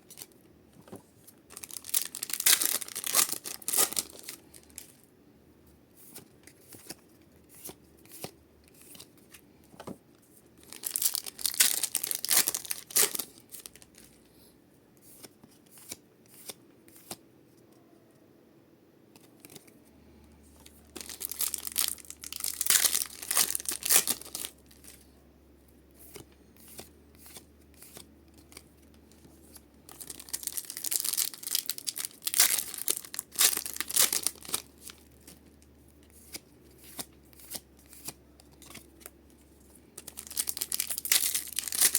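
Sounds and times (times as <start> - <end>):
foil packs tearing: 40.1 - 41.9.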